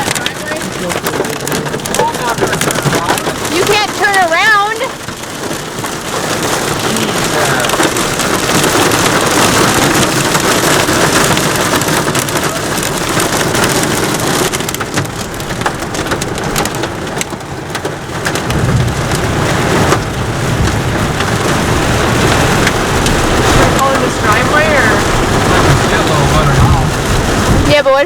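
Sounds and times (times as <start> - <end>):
heavy rain on car roof: 0.0 - 28.0
low rumble: 18.1 - 28.0.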